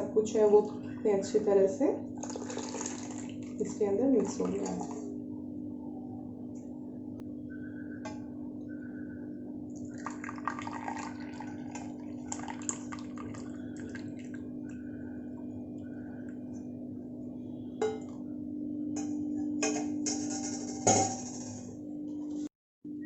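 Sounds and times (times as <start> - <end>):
steady low hum: 0.0 - 22.5
liquid pouring and dripping: 2.2 - 5.0, 9.8 - 14.9.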